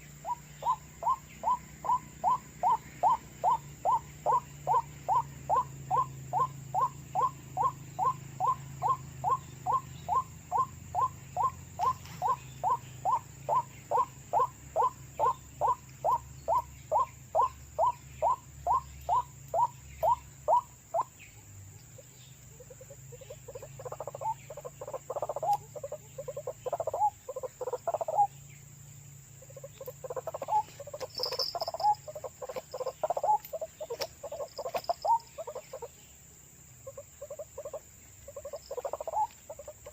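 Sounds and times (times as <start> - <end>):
waterhen calling: 0.0 - 21.2, 36.8 - 39.9.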